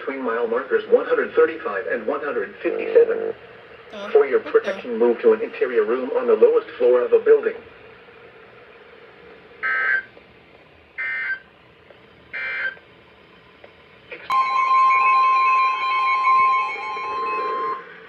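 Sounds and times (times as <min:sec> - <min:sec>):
steady high alert tone: 0:03.9 - 0:04.8, 0:14.3 - 0:18.0.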